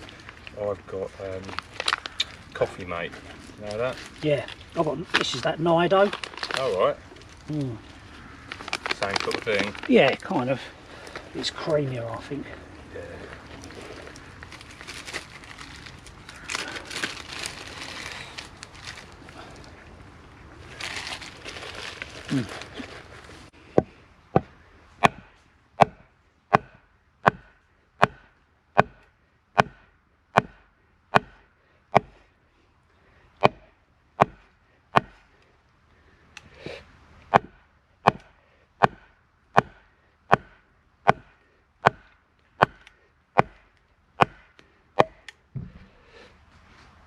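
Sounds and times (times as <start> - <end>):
blade chopping wood: 23.8 - 29.0, 29.6 - 29.8, 30.4 - 30.6, 31.2 - 31.4, 32.0 - 32.2, 33.4 - 33.6, 35.0 - 35.2, 37.3 - 42.8, 44.2 - 45.8.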